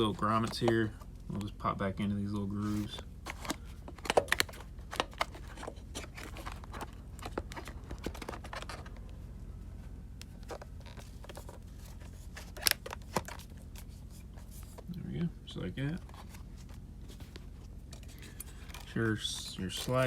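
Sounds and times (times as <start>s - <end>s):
scrapes and rustles: 2.6s - 9.1s, 10.3s - 14.9s, 15.9s - 20.0s.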